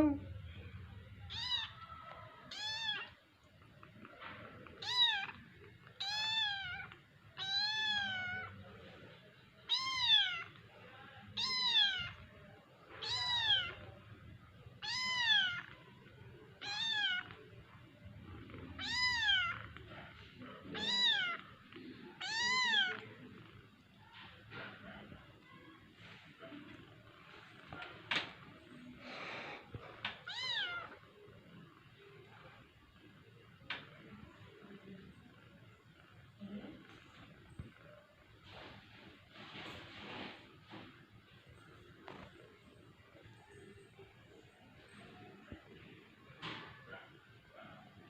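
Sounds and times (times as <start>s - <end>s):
kitten meowing: 1.2s - 3.2s, 9.7s - 10.5s, 11.4s - 12.2s, 14.8s - 15.7s, 18.8s - 19.6s, 20.7s - 21.4s, 22.2s - 23.0s, 30.2s - 31.0s.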